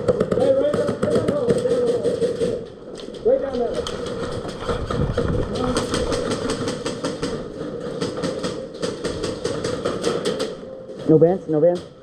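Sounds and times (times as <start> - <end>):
airsoft guns firing: 0.0 - 2.6, 3.8 - 10.7.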